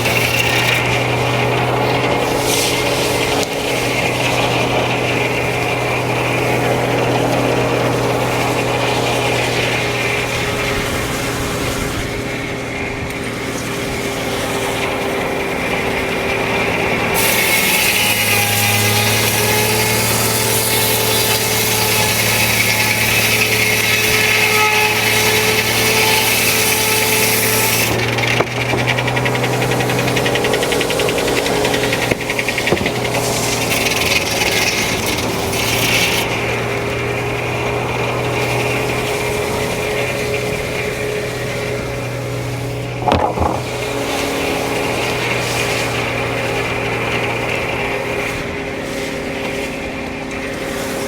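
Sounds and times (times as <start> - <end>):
saw blade cutting through log: 0.0 - 10.7, 16.8 - 36.4, 38.3 - 47.8
sawmill mechanical hum: 0.0 - 51.0.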